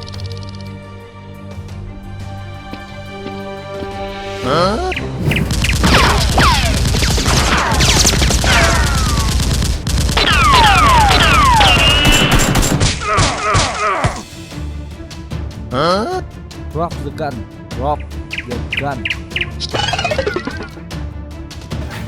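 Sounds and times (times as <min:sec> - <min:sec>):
background music: 0:00.0 - 0:22.0
automatic gunfire sound effects: 0:05.2 - 0:13.0
falling whistles: 0:10.4 - 0:12.3.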